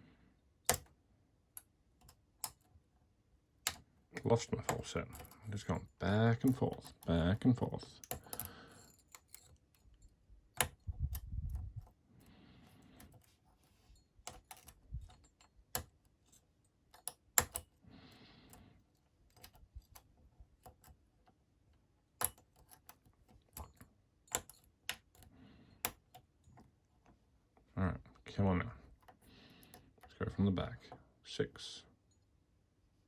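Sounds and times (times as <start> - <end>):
lock pick clicking in padlock: 0.6 - 1.0, 1.6 - 2.7, 3.6 - 3.9, 4.5 - 12.0, 14.0 - 17.8, 18.5 - 21.4, 22.2 - 27.2.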